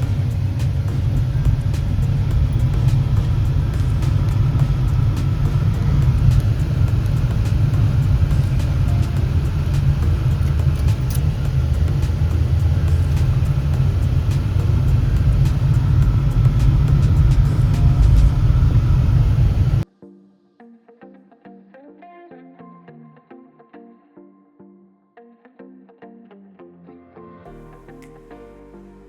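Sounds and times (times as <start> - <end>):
steady low rumble: 0.0 - 19.8.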